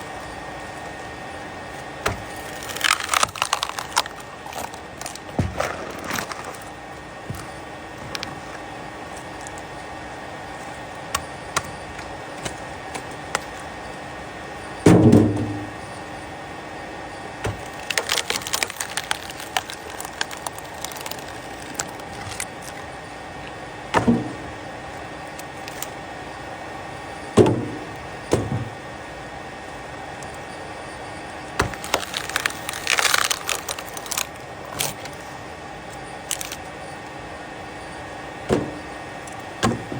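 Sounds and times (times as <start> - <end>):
wooden thumps: 2.0 - 6.7
wooden pieces clicking and rattling: 17.7 - 22.8, 31.7 - 35.2, 36.2 - 36.6.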